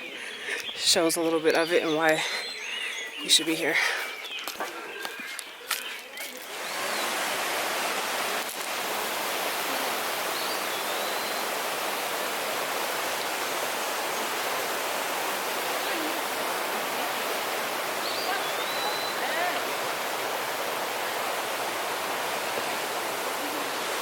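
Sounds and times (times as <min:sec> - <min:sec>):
flowing water rushing: 0:06.3 - 0:24.0.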